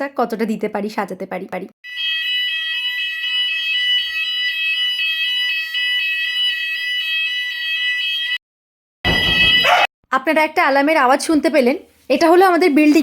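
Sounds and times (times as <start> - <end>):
fire alarm tone: 1.8 - 8.4, 9.0 - 9.9.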